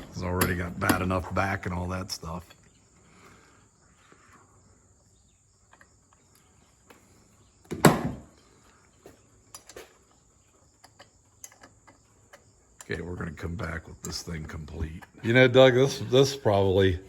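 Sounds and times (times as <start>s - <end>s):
tools clicking and tapping: 0.0s - 1.2s, 9.5s - 10.0s, 10.8s - 13.0s
crickets chirping: 0.0s - 17.0s.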